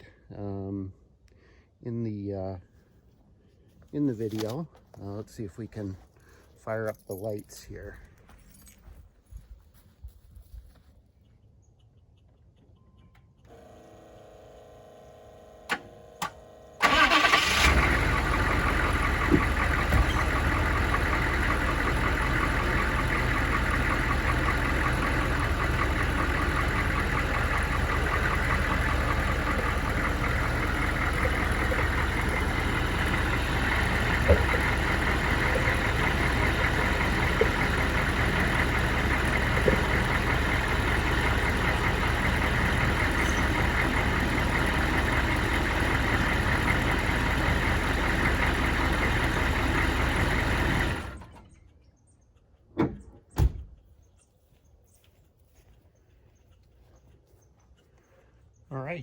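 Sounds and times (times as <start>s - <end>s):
diesel engine starting and idling: 13.5s - 51.6s.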